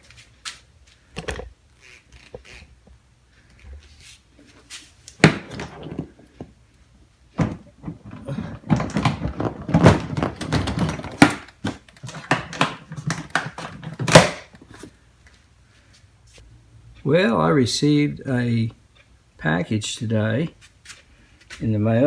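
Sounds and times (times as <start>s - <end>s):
tools clattering in tool box: 5.2s - 6.3s, 7.4s - 14.5s.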